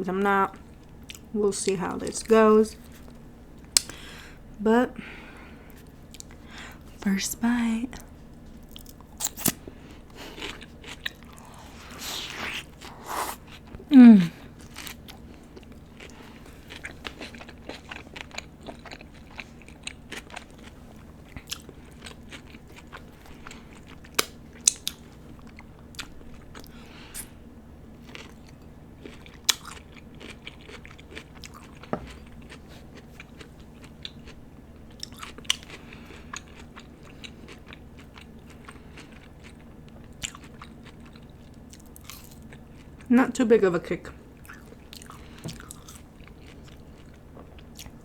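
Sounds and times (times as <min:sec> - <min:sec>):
person chewing food: 0:05.5 - 0:07.0, 0:08.0 - 0:43.1, 0:44.2 - 0:48.0
crunchy snaps: 0:24.1 - 0:25.1.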